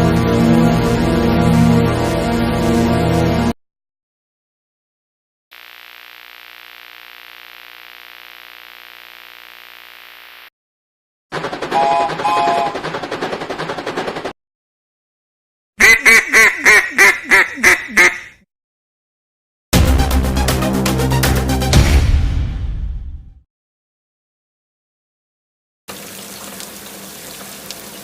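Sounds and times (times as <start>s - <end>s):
short tones: 11.7s - 12.9s
duck quacks: 15.8s - 18.4s.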